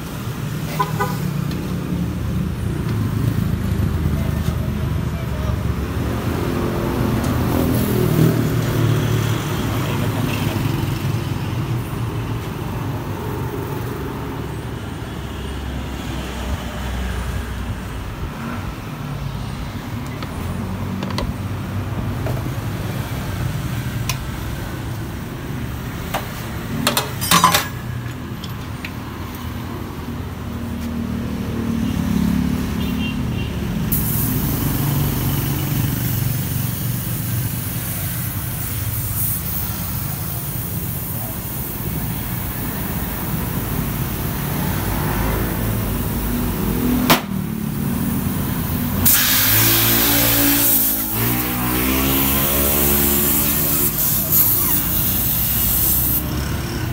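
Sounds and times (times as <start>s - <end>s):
road traffic rumble: 0.0s - 56.9s
high hiss: 48.9s - 51.5s, 52.1s - 56.3s.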